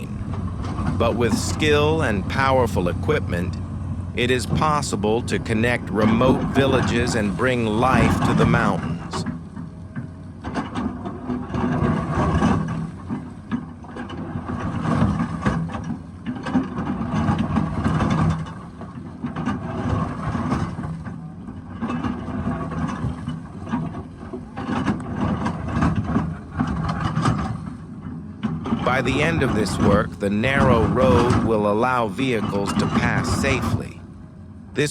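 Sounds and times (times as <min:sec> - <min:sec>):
excavator diesel engine running: 0:00.0 - 0:09.2, 0:28.9 - 0:34.9.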